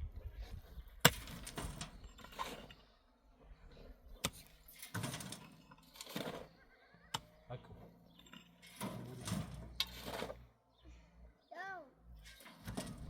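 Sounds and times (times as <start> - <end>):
scraping and rustling: 1.2 - 3.0, 4.6 - 6.7, 7.6 - 10.5.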